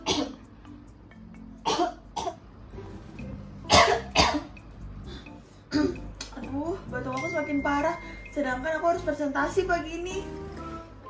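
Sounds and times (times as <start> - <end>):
person coughing: 0.0 - 0.4, 1.7 - 2.4, 3.7 - 6.1
soft background music: 0.0 - 11.0.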